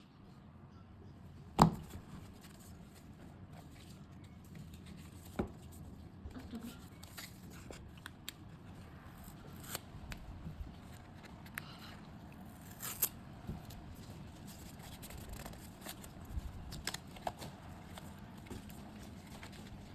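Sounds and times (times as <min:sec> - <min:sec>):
cardboard and paper rustling: 0:01.7 - 0:08.0, 0:13.5 - 0:19.9.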